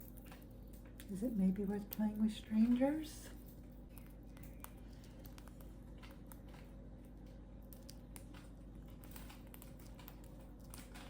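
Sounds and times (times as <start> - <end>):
low room hum: 0.0 - 11.0
small clicks and ticks: 0.0 - 11.0.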